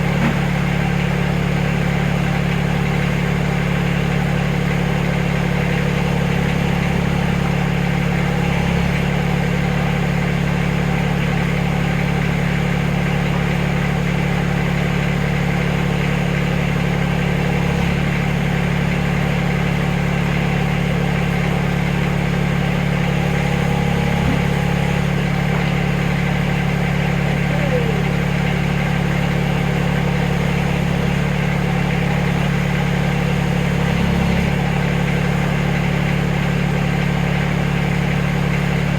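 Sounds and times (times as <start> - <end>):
backhoe engine running: 0.0 - 38.9.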